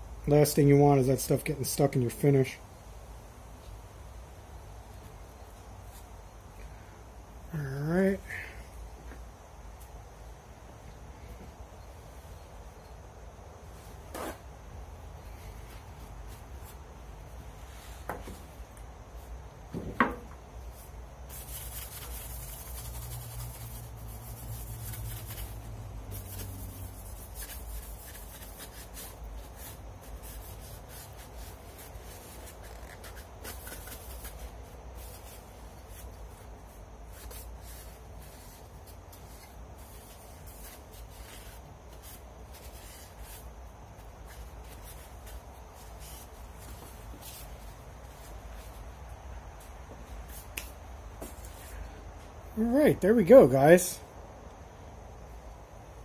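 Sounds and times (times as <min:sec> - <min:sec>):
paper towel rubbing on wood: 0:20.7 - 0:48.8.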